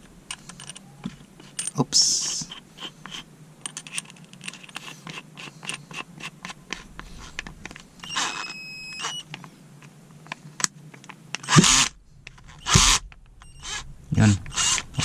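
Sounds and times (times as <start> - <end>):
drill whirring: 8.0 - 9.3, 11.4 - 15.0.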